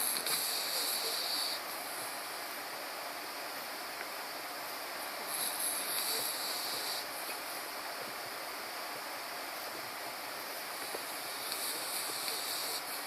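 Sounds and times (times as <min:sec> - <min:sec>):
hissing snore: 0:00.0 - 0:02.3, 0:05.2 - 0:07.8, 0:10.6 - 0:13.0
steady background hiss: 0:00.0 - 0:13.0.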